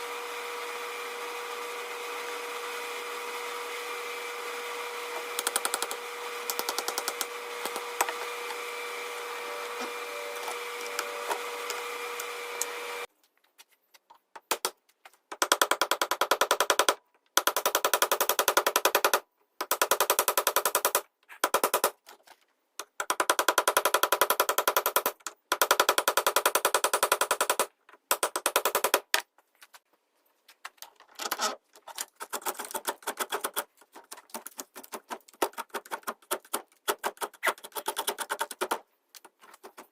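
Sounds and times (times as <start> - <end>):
power tool whine: 0.0 - 13.1
very rapid clicking: 32.2 - 38.8.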